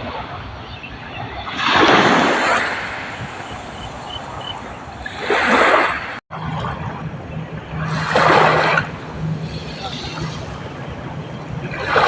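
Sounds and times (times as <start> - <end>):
waves washing in: 0.0 - 12.0
low steady hum: 6.3 - 12.0.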